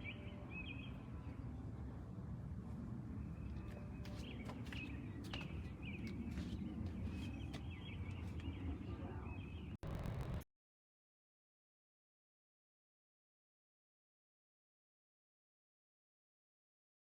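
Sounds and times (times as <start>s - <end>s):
low steady rumble: 9.8s - 10.4s.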